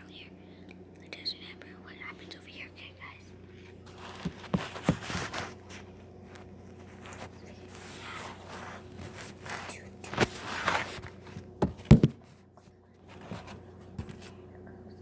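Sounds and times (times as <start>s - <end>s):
faint steady hum: 0.0s - 15.0s
knocks and scrapes of movement: 3.6s - 12.4s.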